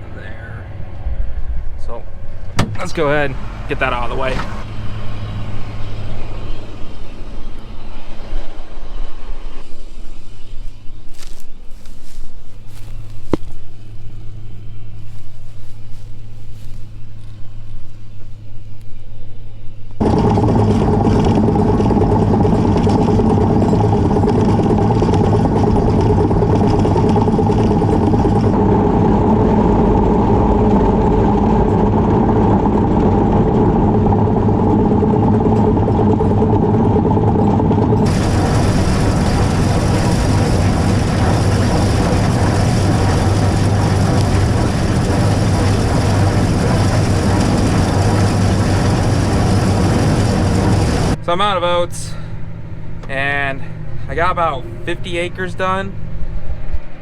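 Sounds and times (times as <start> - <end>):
tractor diesel engine running: 0.0 - 56.7.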